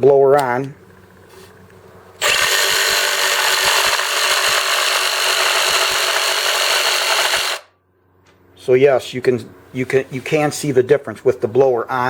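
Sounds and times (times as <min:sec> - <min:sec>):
jigsaw cutting through wood: 0:02.2 - 0:07.7.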